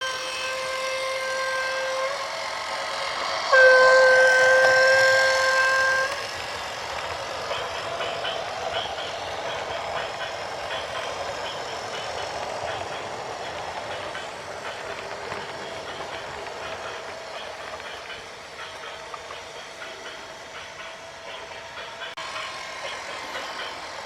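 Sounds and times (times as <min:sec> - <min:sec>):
horn blowing steady note: 0:00.0 - 0:02.3, 0:03.5 - 0:06.3.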